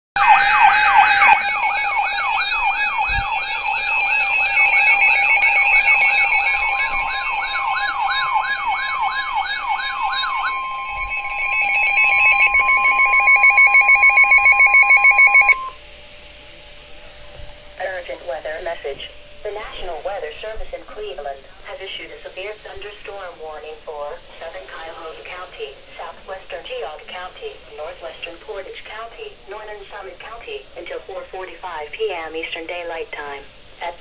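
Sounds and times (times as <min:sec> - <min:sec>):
steady alert tone with beep: 0:00.2 - 0:15.8
warbling siren-like alert: 0:00.2 - 0:15.8.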